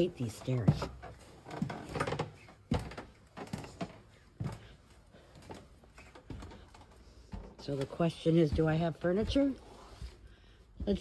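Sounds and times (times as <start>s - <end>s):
footsteps climbing stairs: 0.0s - 11.0s.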